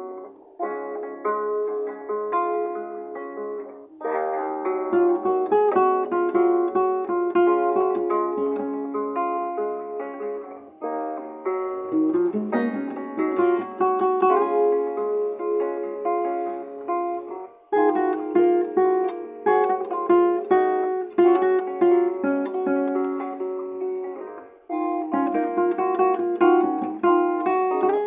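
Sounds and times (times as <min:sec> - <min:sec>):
acoustic guitar melody: 0:00.0 - 0:28.0.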